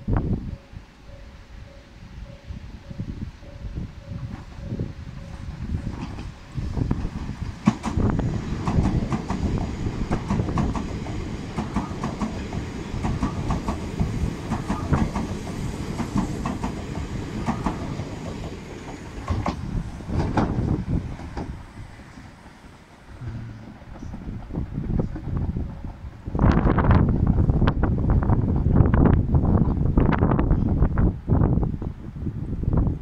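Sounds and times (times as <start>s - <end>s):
train low rumble: 0.0s - 33.0s
train wheels clacking on rail joints: 4.0s - 29.9s.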